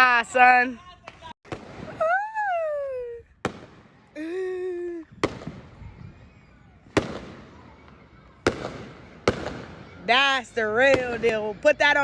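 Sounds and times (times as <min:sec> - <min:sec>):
firework bangs: 0:01.5 - 0:02.0, 0:03.4 - 0:04.0, 0:05.2 - 0:05.8, 0:06.9 - 0:10.2
high falling cry: 0:01.9 - 0:03.3.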